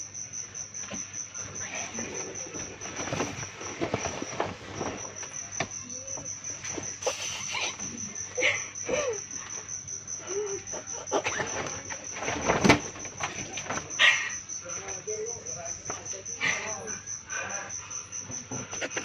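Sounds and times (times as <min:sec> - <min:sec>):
cricket chirring: 0:00.0 - 0:19.0
short rustles: 0:02.6 - 0:05.4.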